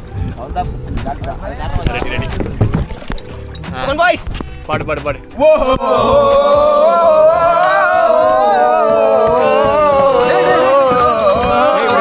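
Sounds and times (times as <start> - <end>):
person singing: 5.4 - 12.0.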